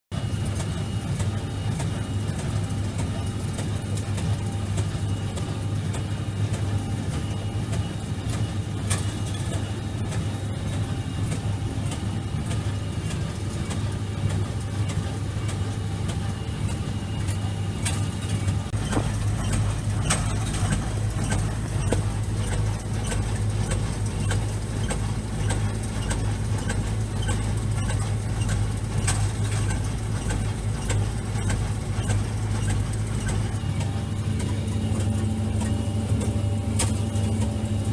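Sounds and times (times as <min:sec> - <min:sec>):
tractor diesel engine running: 0:00.2 - 0:37.9
sharp knocks from baler machinery: 0:18.7 - 0:37.4.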